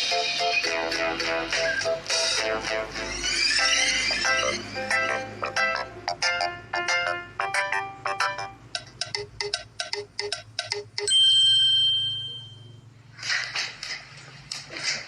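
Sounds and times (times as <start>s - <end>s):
bell-like ding: 11.1s - 12.8s.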